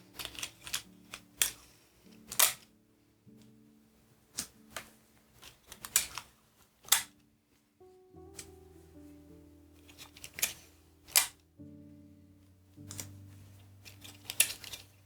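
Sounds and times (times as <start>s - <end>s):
adhesive tape ripping: 5.4s - 7.1s, 9.9s - 11.4s, 13.9s - 15.0s.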